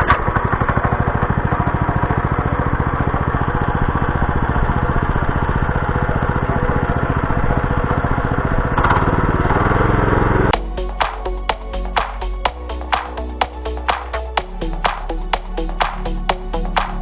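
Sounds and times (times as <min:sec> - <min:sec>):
single-cylinder engine running: 0:00.1 - 0:10.4.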